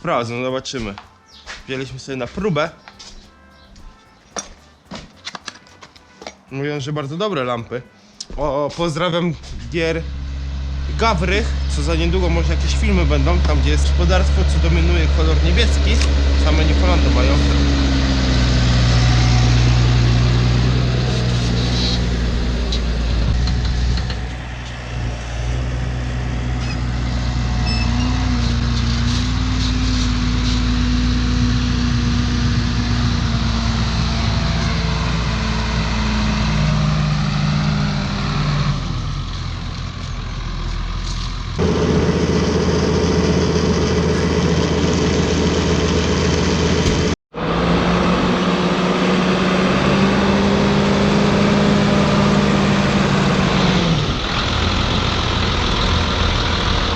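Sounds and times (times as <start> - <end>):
engine idling: 37.2 - 47.2, 52.3 - 56.9.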